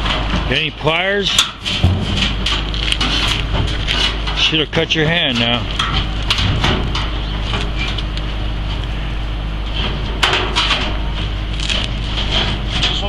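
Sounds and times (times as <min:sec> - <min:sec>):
low rumble: 0:01.6 - 0:04.4
sharp knock: 0:01.8 - 0:02.8.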